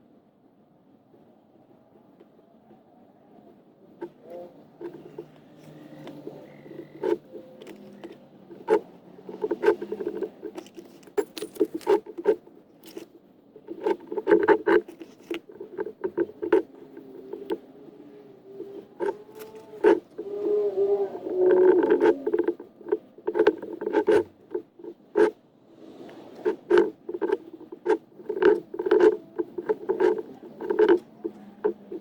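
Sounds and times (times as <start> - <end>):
squeaky tool strokes: 4.4 - 13.1, 18.5 - 24.6, 26.1 - 32.0
hand tool scraping cement: 26.1 - 32.0.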